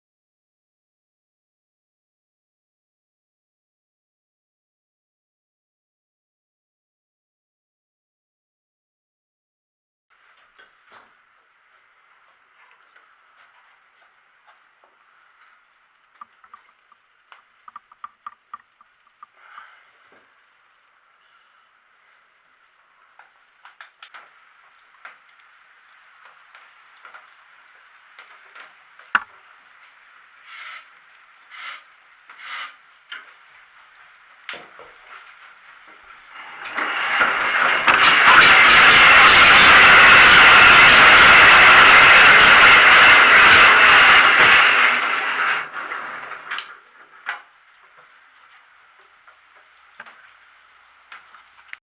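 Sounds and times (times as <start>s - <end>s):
low steady hiss: 10.1s - 36.8s, 45.7s - 51.8s
sharp clicks: 16.0s - 19.4s
engine running: 36.4s - 45.8s.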